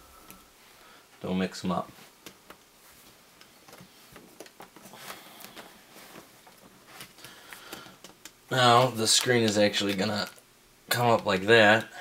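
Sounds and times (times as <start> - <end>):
hands handling plastic case: 2.2 - 11.8.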